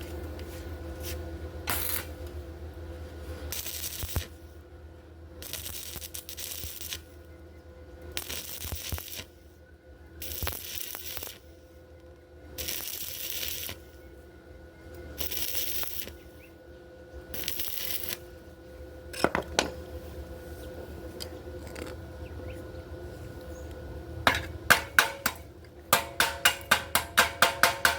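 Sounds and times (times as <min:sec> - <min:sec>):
steady hum: 0:00.0 - 0:27.9
electric arc welding crackling: 0:01.7 - 0:02.2, 0:03.5 - 0:04.4, 0:05.4 - 0:07.1, 0:08.2 - 0:09.4, 0:10.2 - 0:11.5, 0:12.6 - 0:14.0, 0:15.2 - 0:16.3, 0:17.3 - 0:18.3.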